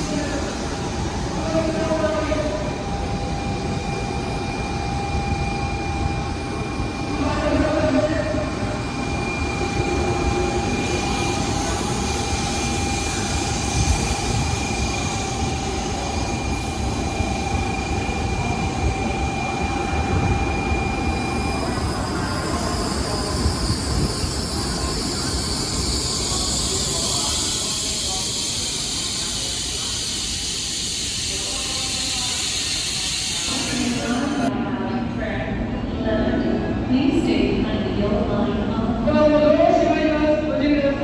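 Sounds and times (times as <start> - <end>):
rushing rail noise: 0.0 - 41.0
bright hiss: 26.2 - 34.5.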